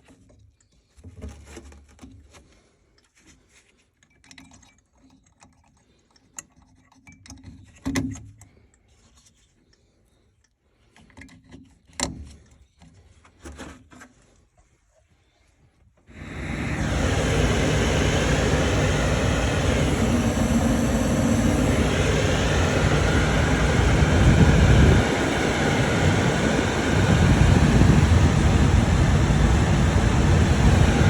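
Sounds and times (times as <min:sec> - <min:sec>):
gas furnace rumbling: 0:16.1 - 0:31.0.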